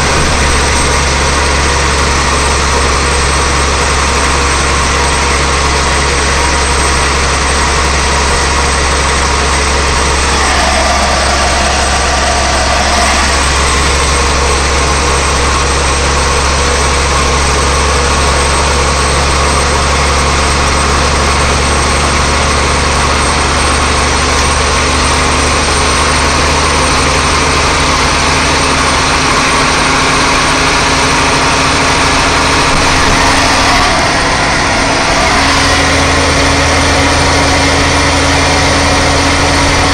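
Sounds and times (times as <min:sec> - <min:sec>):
truck engine drone: 0:00.0 - 0:39.9
road rumble: 0:06.0 - 0:16.7.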